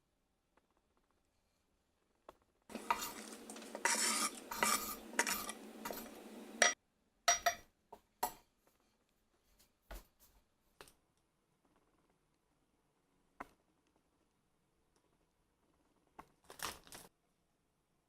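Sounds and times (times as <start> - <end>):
metal utensil scraping in pot: 2.7 - 6.8
metal clinks on cookware: 6.5 - 7.6.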